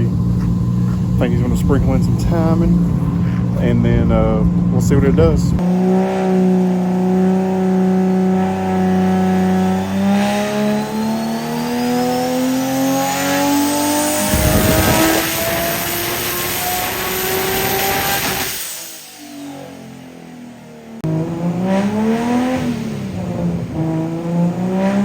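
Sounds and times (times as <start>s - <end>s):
engine revving on dyno: 4.0s - 25.0s
rough noisy burst: 14.0s - 19.6s.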